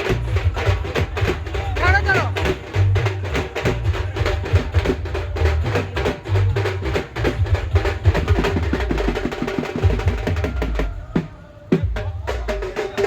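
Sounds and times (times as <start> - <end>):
loud dance music: 0.1 - 6.2.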